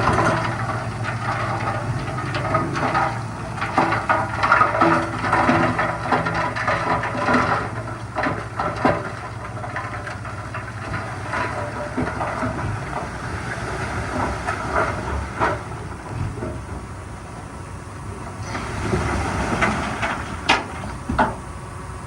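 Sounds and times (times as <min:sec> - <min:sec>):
metallic clanks and rattles: 0:00.0 - 0:17.0
bulldozer diesel engine running: 0:00.0 - 0:22.0.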